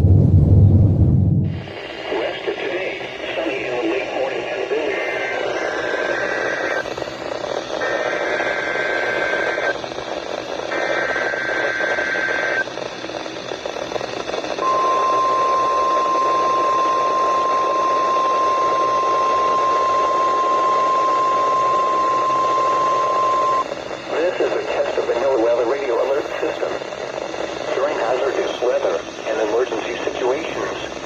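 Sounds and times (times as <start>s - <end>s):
radio hiss: 1.5s - 6.9s, 16.2s - 31.0s
high warning alarm tone: 14.6s - 23.7s.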